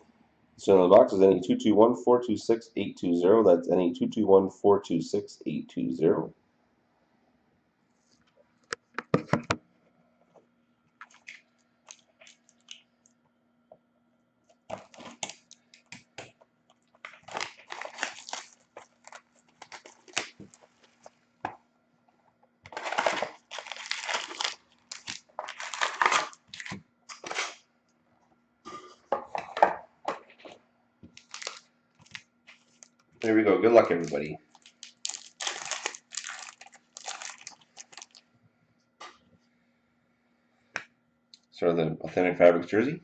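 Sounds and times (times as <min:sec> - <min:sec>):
plastic wrapping crinkling: 0:11.0 - 0:12.9, 0:14.7 - 0:16.0, 0:16.7 - 0:21.2, 0:22.7 - 0:27.6, 0:31.1 - 0:38.3.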